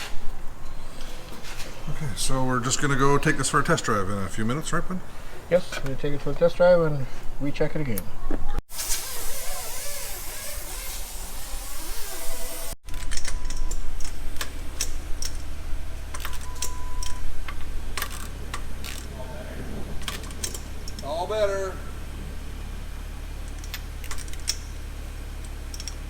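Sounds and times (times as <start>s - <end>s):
loud hiss: 8.7s - 12.8s
low hum: 11.2s - 26.0s.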